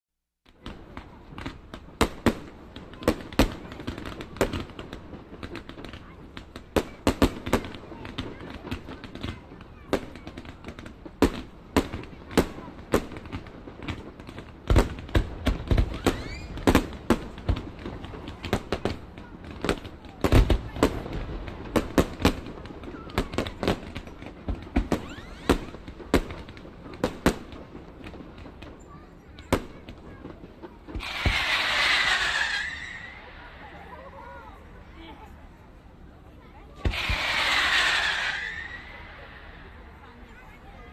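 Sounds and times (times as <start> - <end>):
fireworks bangs and pops: 0.5 - 35.4, 36.5 - 40.9
fireworks crackle rumble: 0.5 - 40.9
deep firework boom: 30.9 - 33.7.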